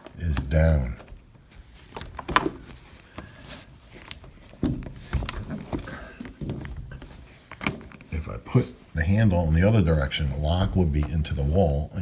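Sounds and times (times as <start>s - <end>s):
door latch clicks and knocks: 0.0s - 8.1s
dull thuds: 0.0s - 12.0s.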